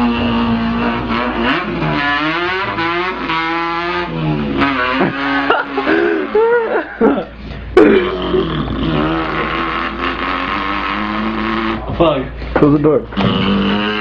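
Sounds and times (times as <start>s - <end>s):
man imitating engine with voice: 0.0s - 12.2s, 13.0s - 14.0s.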